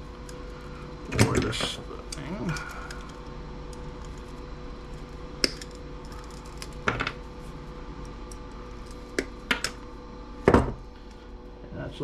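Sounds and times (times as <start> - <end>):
electrical hum: 0.0 - 12.0.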